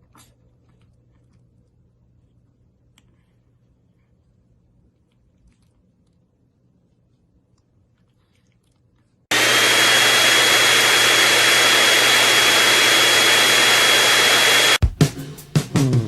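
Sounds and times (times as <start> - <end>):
machine motor rushing and whining: 9.3 - 14.8.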